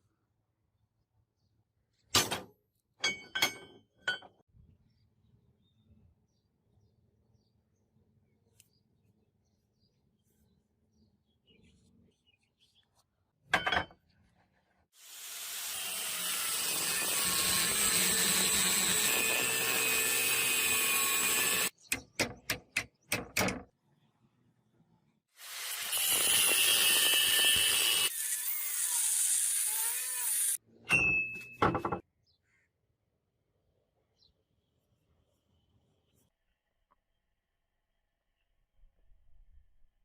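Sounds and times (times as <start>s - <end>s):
power tool running: 15.0s - 21.7s, 25.4s - 30.6s.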